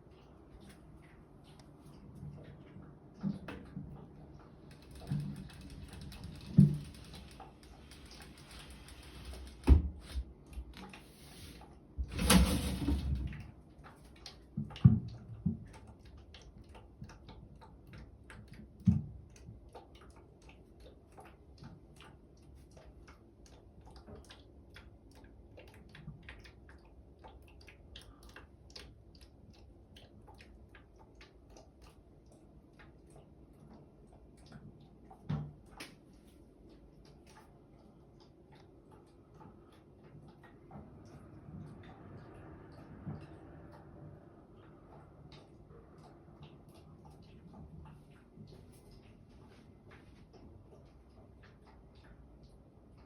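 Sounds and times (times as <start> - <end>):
faint ticking clicks: 2.4 - 9.6.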